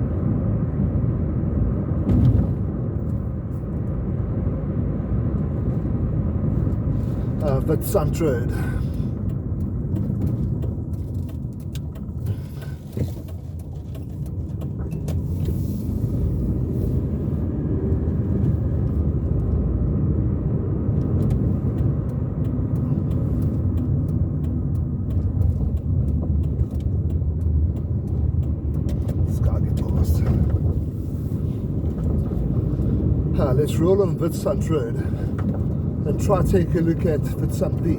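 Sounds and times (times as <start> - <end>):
car engine and tyres rumbling: 0.0 - 37.9.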